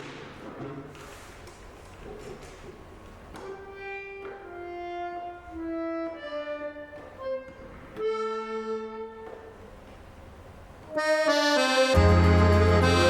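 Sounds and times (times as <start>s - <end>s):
slow instrumental melody: 10.9s - 13.0s.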